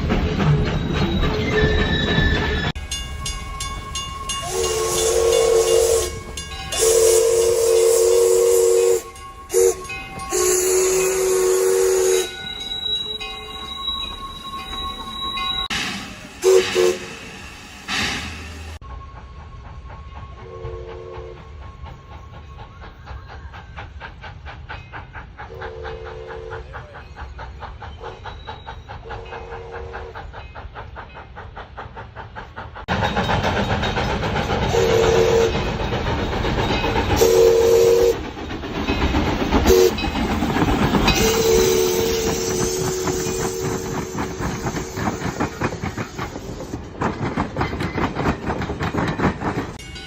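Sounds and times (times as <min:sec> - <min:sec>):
passing train noise: 0:00.0 - 0:50.0
train wheels clicking on rails: 0:00.0 - 0:50.0
train horn blasts: 0:04.3 - 0:12.5, 0:16.4 - 0:17.2, 0:20.4 - 0:21.6, 0:25.6 - 0:26.7, 0:29.1 - 0:30.2, 0:34.7 - 0:35.7, 0:37.2 - 0:38.2, 0:39.7 - 0:40.0, 0:41.1 - 0:45.5.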